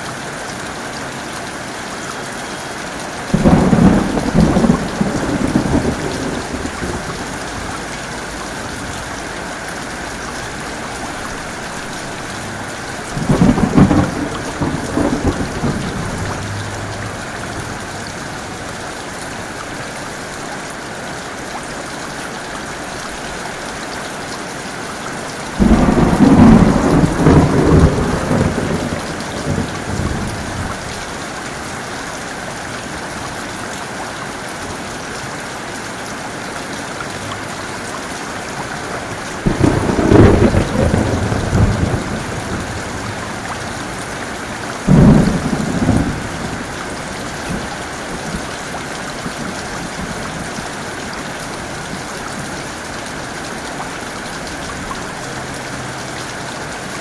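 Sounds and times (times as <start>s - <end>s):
heavy rain: 0.0s - 57.0s
thunderclaps: 3.3s - 19.8s, 25.6s - 31.2s, 39.1s - 50.4s.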